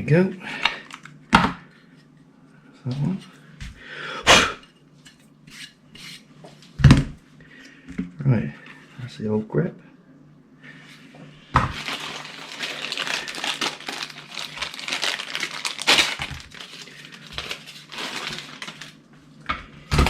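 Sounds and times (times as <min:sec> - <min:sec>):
crinkling handling noise: 0:11.6 - 0:20.0.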